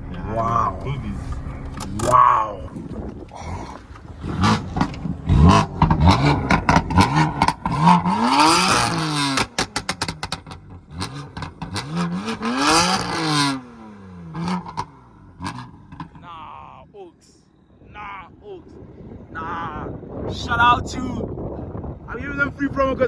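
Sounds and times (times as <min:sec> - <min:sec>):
car engine revving: 0:00.0 - 0:16.6
exhaust pops and crackles: 0:00.0 - 0:16.6.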